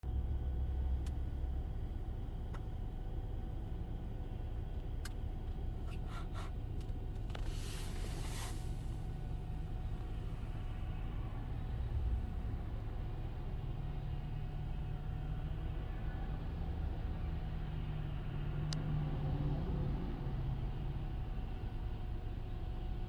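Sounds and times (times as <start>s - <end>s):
vehicle motor rumble: 0.0s - 23.0s
short hiss: 7.4s - 9.2s.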